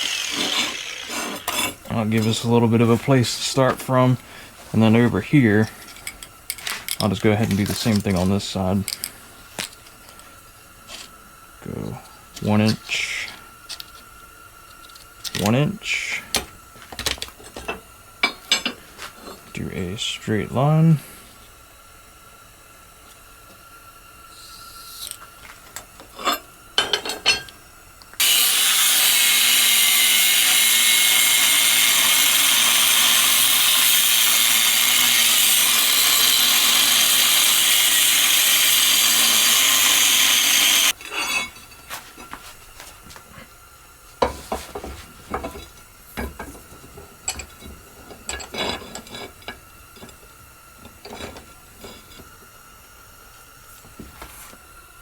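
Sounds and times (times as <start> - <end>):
angle grinder grinding steel: 0.0 - 4.1, 28.2 - 41.6.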